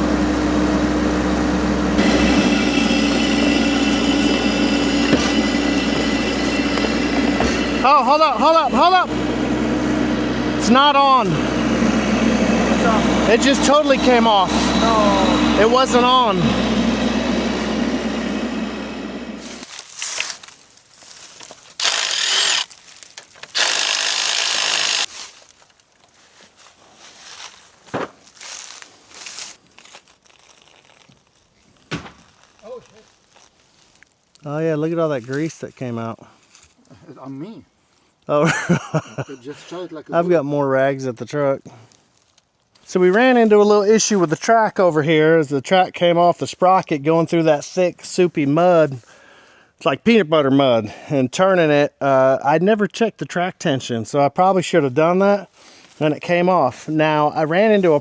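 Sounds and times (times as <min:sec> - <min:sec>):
diesel engine running: 0:00.0 - 0:19.7
hydraulic whine: 0:00.0 - 0:19.7, 0:21.8 - 0:22.7, 0:23.4 - 0:25.1
loud rasping scrapes: 0:02.0 - 0:20.4, 0:21.7 - 0:25.3.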